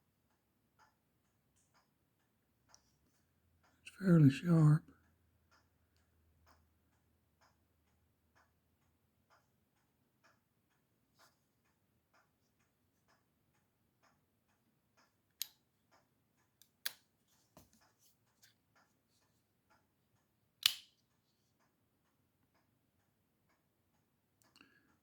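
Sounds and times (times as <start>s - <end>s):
faint steady ticking: 0.0s - 25.0s
pocket knife clicks: 20.6s - 21.0s.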